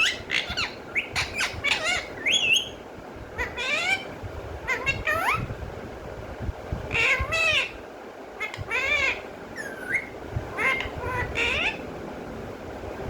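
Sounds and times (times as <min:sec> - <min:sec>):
parrot calling: 0:00.0 - 0:02.8, 0:03.4 - 0:05.5, 0:06.9 - 0:07.8, 0:08.4 - 0:11.9.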